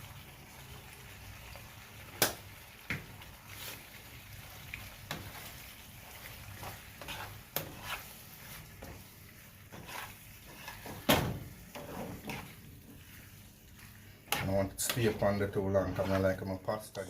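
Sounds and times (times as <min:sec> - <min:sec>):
utensil stirring pasta in sauce: 0:00.0 - 0:17.0
utensil scraping and clicking on pan: 0:06.6 - 0:16.4.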